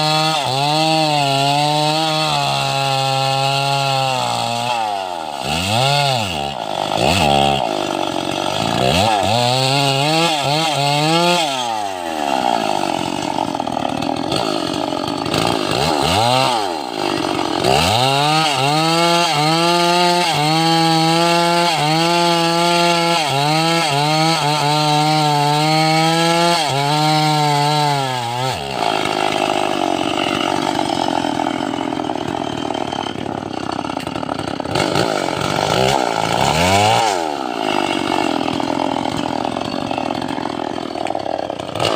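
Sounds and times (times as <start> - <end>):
chainsaw revving: 0.0 - 41.9.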